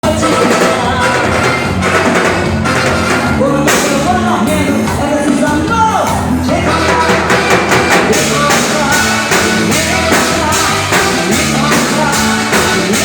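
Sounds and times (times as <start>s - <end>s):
loud live band music: 0.0s - 13.0s
woman singing: 8.1s - 13.0s.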